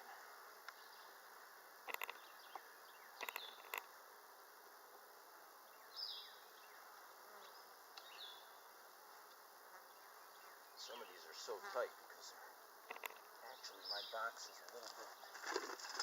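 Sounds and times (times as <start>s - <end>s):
honeybees buzzing: 0.0s - 16.0s
sharp clicks: 1.9s - 2.2s, 3.2s - 3.9s, 12.9s - 13.3s.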